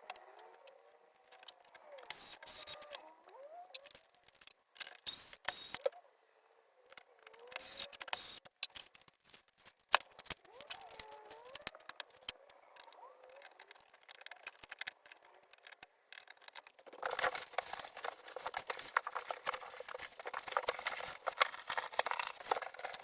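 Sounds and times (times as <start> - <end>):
sharp clicks and light knocks: 6.9 - 23.0.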